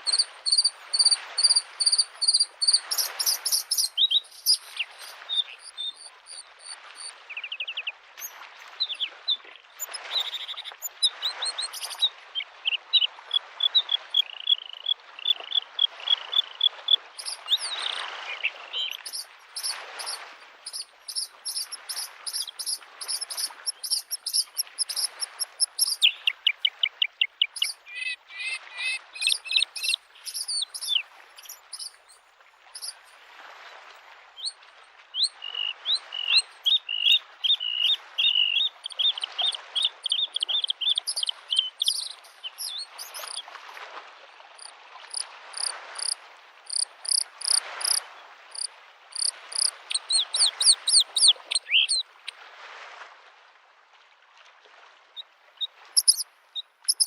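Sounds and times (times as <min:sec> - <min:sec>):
bird singing trills: 0:00.0 - 0:08.3, 0:09.9 - 0:13.1, 0:17.2 - 0:32.1, 0:32.8 - 0:33.0, 0:35.2 - 0:43.4, 0:45.1 - 0:48.0, 0:48.6 - 0:52.0, 0:56.0 - 0:56.2
small waves lapping on shore: 0:00.0 - 0:57.0.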